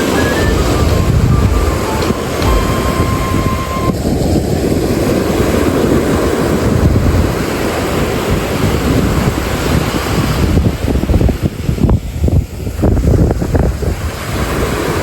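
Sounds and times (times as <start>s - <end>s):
background music note: 0.0s - 4.0s
sea water washing: 0.0s - 11.8s, 12.4s - 15.0s
wind buffeting microphone: 0.0s - 15.0s.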